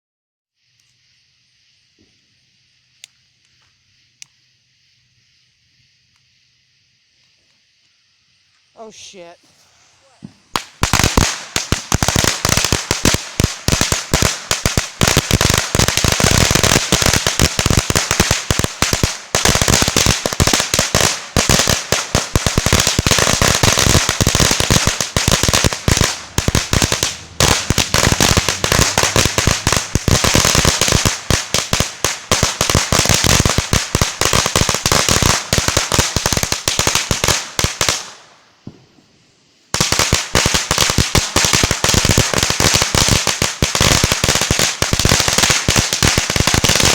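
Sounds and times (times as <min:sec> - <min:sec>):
firecrackers banging: 0:10.2 - 0:39.1, 0:39.7 - 0:46.9.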